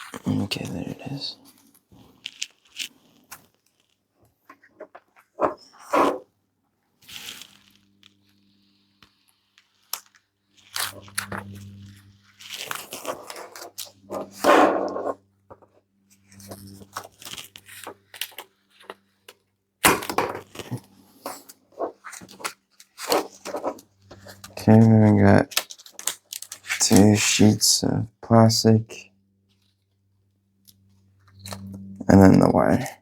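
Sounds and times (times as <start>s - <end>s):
plastic and padding tearing: 9.6s - 15.6s, 19.8s - 24.8s, 25.5s - 27.0s.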